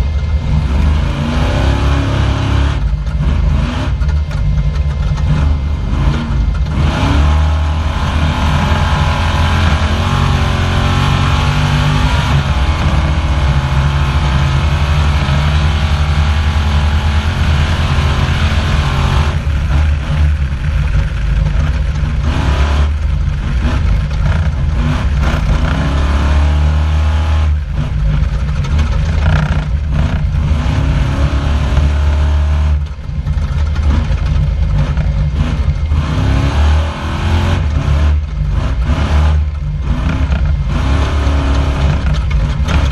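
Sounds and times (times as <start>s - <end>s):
constant noisy rush: 0.0s - 42.9s
race car engine revving: 0.0s - 42.9s.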